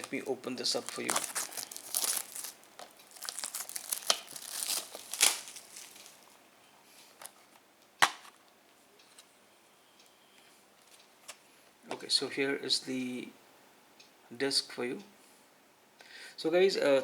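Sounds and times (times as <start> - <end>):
plastic wrap crinkling and tearing: 0.0 - 6.4.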